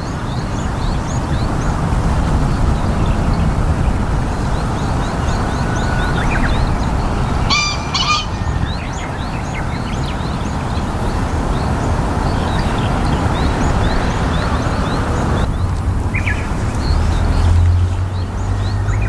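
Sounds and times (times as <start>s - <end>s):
small birds chirping: 0.0s - 19.0s
pheasant crowing: 4.1s - 15.5s.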